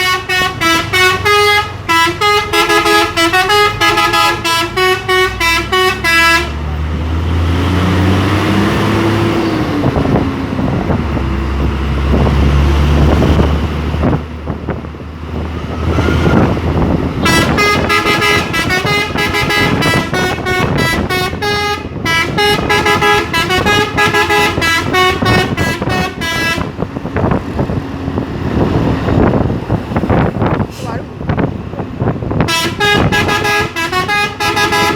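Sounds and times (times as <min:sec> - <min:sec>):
musical air horn tune: 0:00.0 - 0:06.6, 0:17.2 - 0:26.7, 0:32.5 - 0:34.9
truck engine running under load: 0:00.0 - 0:34.9.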